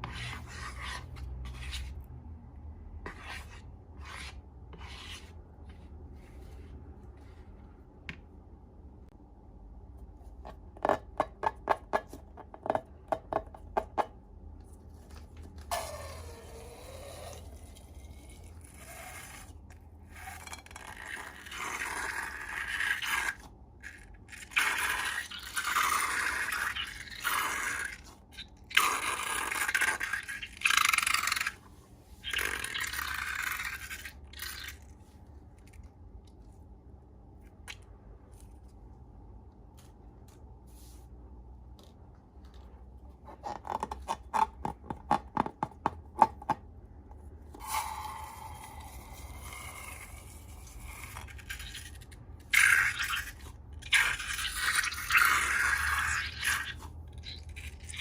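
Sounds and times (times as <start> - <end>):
utensil scraping slime: 0.0 - 7.6, 14.6 - 36.5, 47.5 - 58.0.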